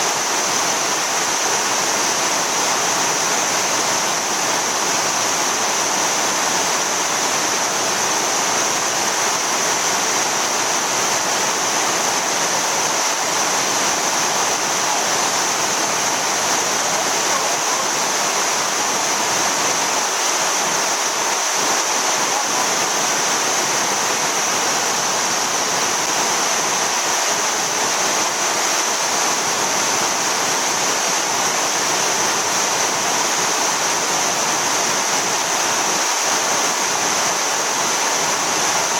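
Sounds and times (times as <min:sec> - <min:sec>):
waterfall roaring: 0:00.0 - 0:38.9.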